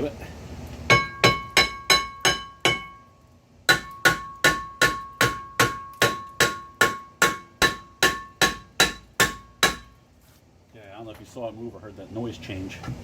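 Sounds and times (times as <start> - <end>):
hammer striking metal ringing: 0.9 - 3.1, 3.7 - 10.0.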